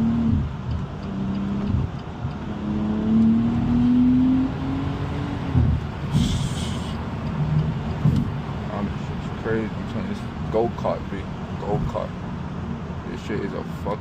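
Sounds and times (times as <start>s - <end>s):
car engine accelerating hard: 0.0s - 11.7s
hiss after gear shift: 6.1s - 7.0s.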